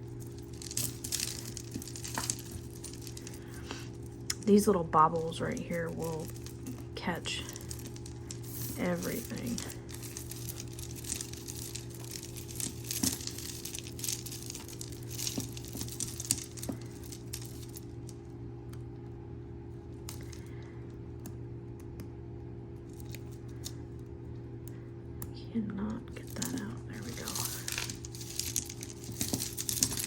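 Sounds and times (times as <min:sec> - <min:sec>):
steady low hum: 0:00.0 - 0:30.0
metal chains clinking and rattling: 0:00.2 - 0:03.6, 0:04.5 - 0:17.9, 0:26.2 - 0:30.0.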